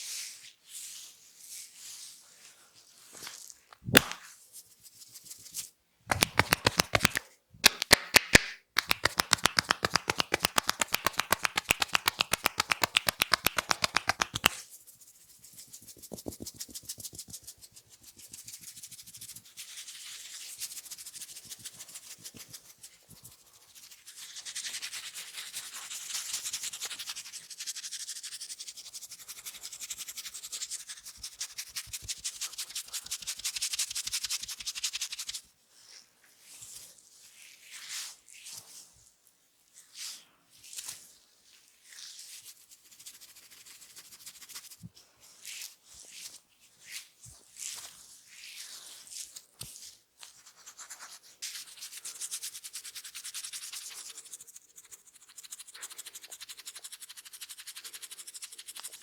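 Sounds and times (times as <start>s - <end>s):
hand slaps on head: 3.8s - 4.3s, 6.1s - 14.6s
fingertips scratching scalp: 6.1s - 14.6s, 15.5s - 18.9s
hand tapping on head: 6.1s - 14.6s, 16.0s - 17.3s.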